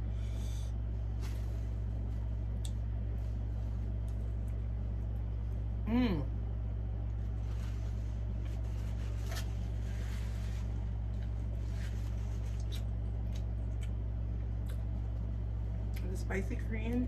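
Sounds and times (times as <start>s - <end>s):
steady low hum: 0.0s - 17.0s
chewing and crunching fried food: 7.0s - 16.2s.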